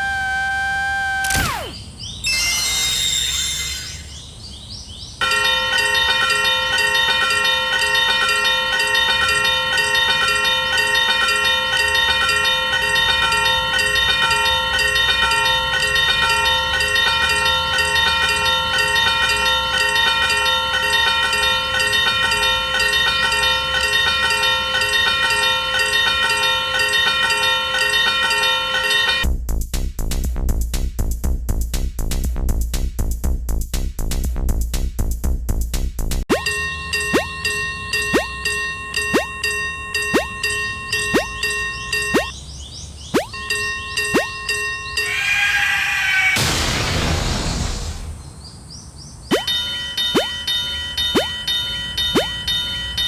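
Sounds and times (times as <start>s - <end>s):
level-crossing warning bell: 5.2s - 29.3s, 36.4s - 46.3s, 49.4s - 53.0s.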